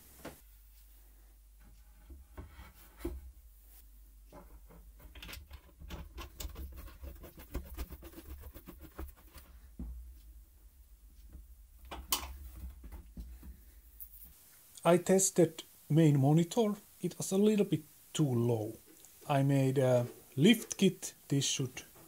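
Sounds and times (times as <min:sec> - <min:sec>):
wooden knocks and rubbing: 0:04.3 - 0:10.2.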